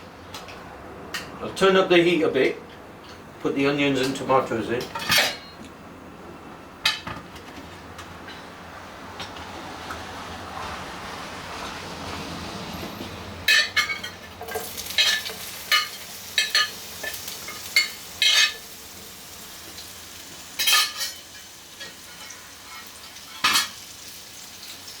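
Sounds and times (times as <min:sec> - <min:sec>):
vegetables sizzling in a pan: 0:13.5 - 0:25.0.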